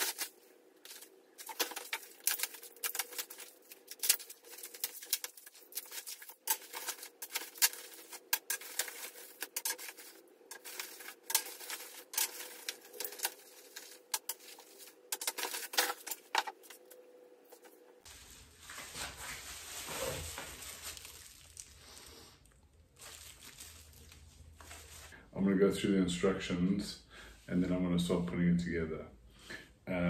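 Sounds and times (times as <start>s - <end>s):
clicks and rustles of handling: 0.0s - 17.8s.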